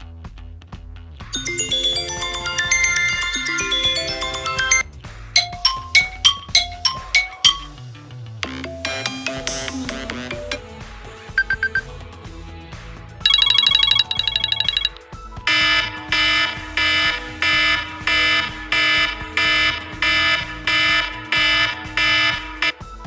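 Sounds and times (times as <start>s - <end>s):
alarm-like beep pattern: 1.4s - 4.8s, 5.4s - 7.8s, 11.4s - 11.9s, 13.3s - 22.7s
rapid pulsing electronic beep: 1.4s - 4.8s, 5.4s - 7.8s, 11.4s - 11.9s, 13.3s - 22.7s.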